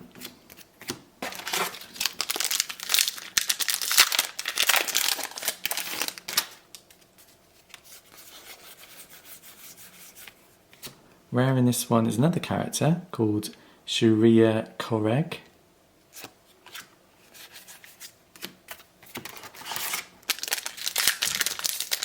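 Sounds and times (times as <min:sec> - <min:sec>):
cards rustling: 0:00.5 - 0:08.2, 0:16.1 - 0:22.0
wrapper tearing and crinkling: 0:01.2 - 0:07.0, 0:19.2 - 0:22.0.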